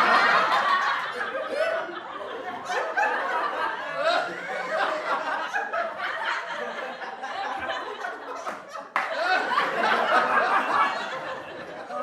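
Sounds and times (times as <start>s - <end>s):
audience laughter: 0.0s - 12.0s
scattered clapping: 8.3s - 9.6s.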